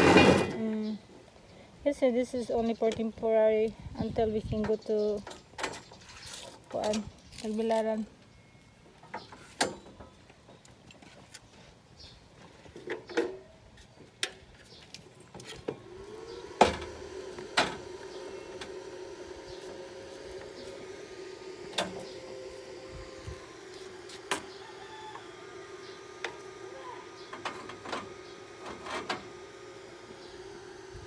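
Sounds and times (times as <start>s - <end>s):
small electric motor humming: 15.4s - 31.0s.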